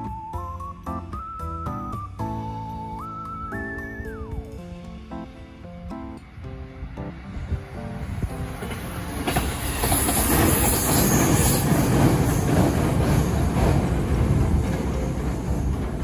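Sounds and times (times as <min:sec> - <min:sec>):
train rumble and wheel noise: 0:00.0 - 0:16.0
high hiss from wheels: 0:04.6 - 0:13.8.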